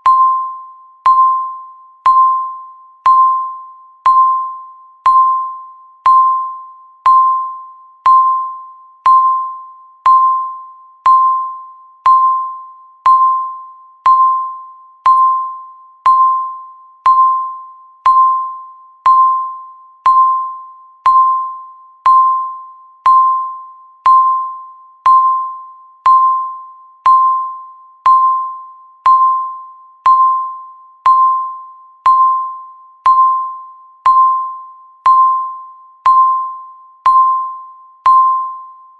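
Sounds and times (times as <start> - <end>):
timer electronic beeps: 0.0 - 38.9.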